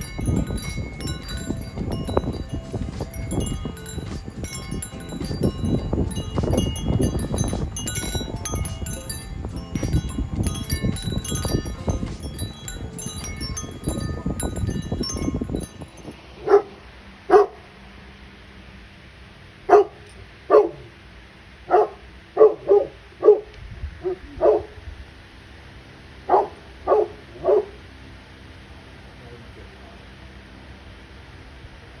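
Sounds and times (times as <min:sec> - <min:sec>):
chiming music: 0:00.0 - 0:16.4
dog barking: 0:16.4 - 0:16.7, 0:17.3 - 0:17.6, 0:19.7 - 0:20.9, 0:21.7 - 0:24.7, 0:26.3 - 0:27.8.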